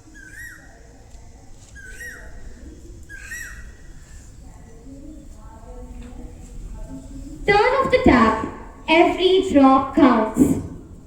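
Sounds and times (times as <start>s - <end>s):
bird calling: 0.0s - 5.4s.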